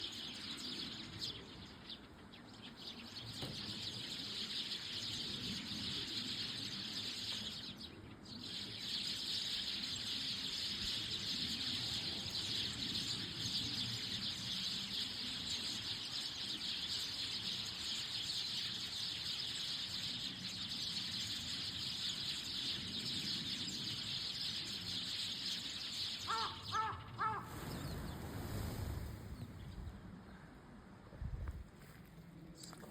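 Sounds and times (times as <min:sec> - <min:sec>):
sparrows chirping in chorus: 0:00.0 - 0:30.5
crow cawing: 0:26.3 - 0:27.5.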